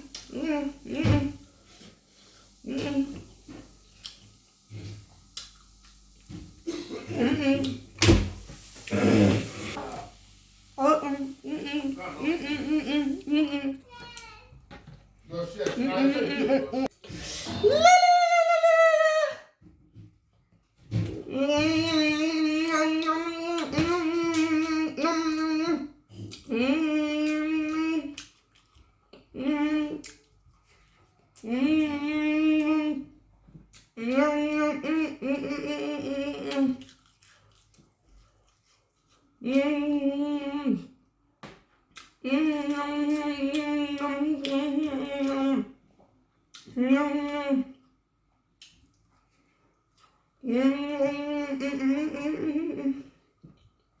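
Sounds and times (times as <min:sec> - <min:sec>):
woman humming mmm: 0:00.0 - 0:01.4, 0:02.6 - 0:03.6, 0:06.7 - 0:07.9, 0:08.9 - 0:10.0, 0:11.0 - 0:13.8, 0:21.2 - 0:28.2, 0:29.2 - 0:30.2, 0:31.4 - 0:33.2, 0:34.0 - 0:36.9, 0:39.4 - 0:41.0, 0:50.4 - 0:53.2.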